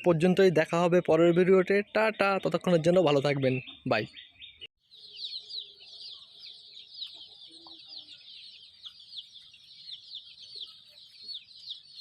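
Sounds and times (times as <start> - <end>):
chicks peeping: 0.0 - 12.0
chicken clucks: 5.6 - 11.8.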